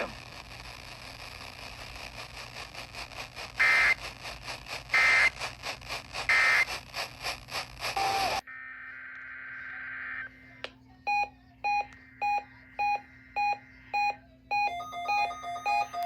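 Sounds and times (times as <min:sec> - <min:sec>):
radio hiss and crackle: 0:00.0 - 0:10.8
raspy digital data screech: 0:04.9 - 0:05.4, 0:06.3 - 0:06.7.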